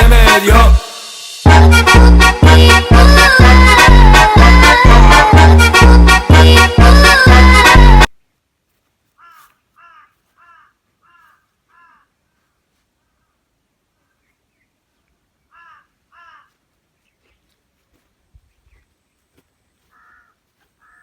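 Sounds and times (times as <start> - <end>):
crow cawing: 9.2 - 13.4, 15.5 - 16.6, 19.8 - 21.0.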